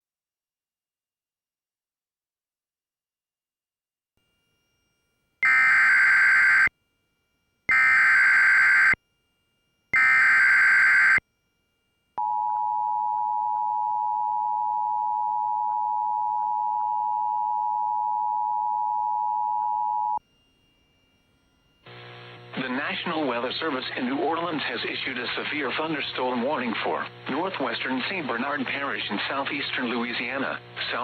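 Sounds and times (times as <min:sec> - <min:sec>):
two-tone attention signal: 0:05.4 - 0:06.7, 0:07.7 - 0:09.0, 0:10.0 - 0:11.2.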